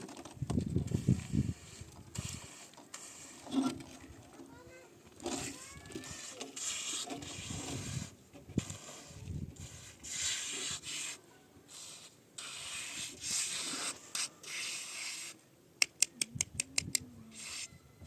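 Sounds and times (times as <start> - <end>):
scraping strokes: 0.8 - 4.1, 4.7 - 15.4, 17.3 - 17.8
sharp clicks: 15.8 - 17.1.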